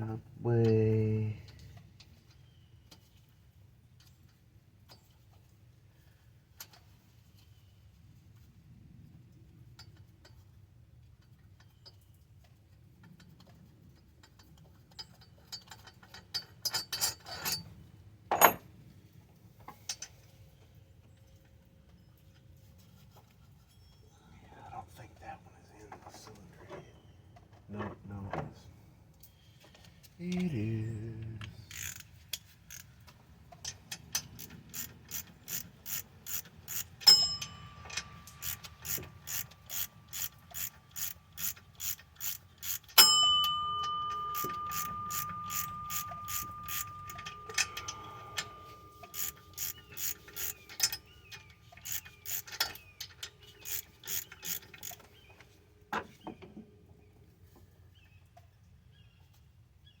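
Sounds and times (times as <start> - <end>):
ratchet wrench clicking: 31.7 - 32.9, 33.6 - 43.1, 44.1 - 51.0, 51.7 - 55.1.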